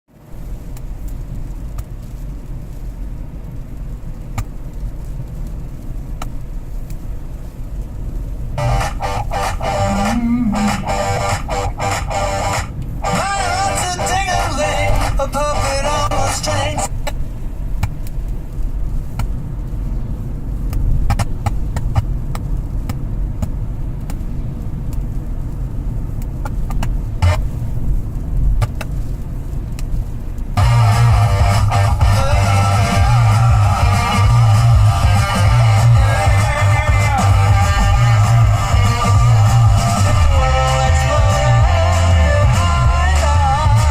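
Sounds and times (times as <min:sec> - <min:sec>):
car engine and road noise: 0:00.1 - 0:43.9.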